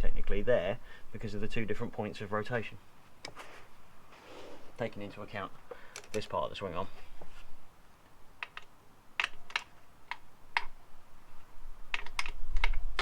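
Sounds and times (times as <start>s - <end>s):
metallic clicks of hand tools: 5.9s - 6.3s, 11.9s - 13.0s.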